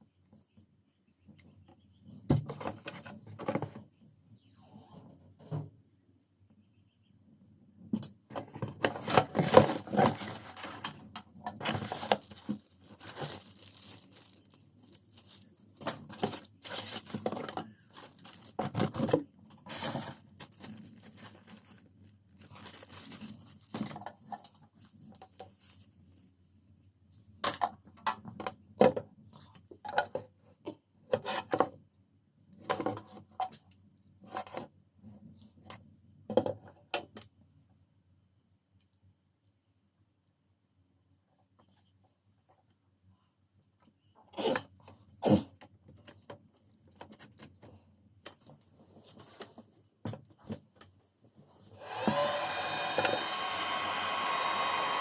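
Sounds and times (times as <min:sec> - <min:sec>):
packaging tearing and crinkling: 0:11.6 - 0:23.9.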